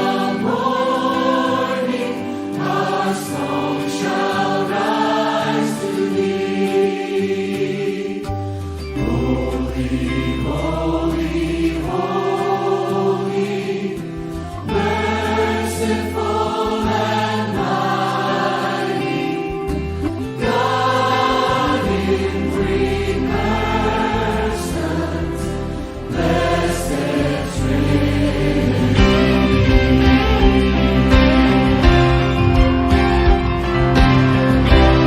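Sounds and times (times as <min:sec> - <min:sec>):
group singing worship song: 0:00.0 - 0:35.0
instrumental backing with bass: 0:13.3 - 0:18.5, 0:19.2 - 0:35.0.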